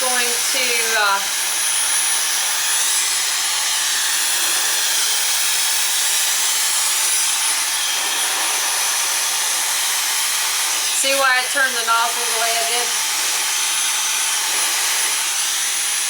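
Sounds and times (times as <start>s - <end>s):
hair dryer running: 0.0s - 16.0s.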